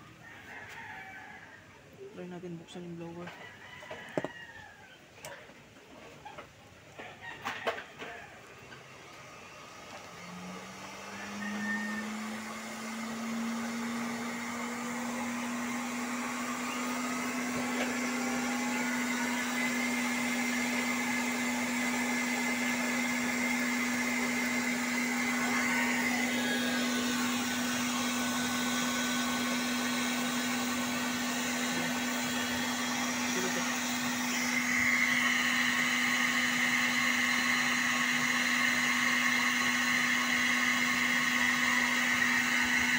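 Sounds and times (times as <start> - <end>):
electric blower fan humming: 7.5 - 42.9.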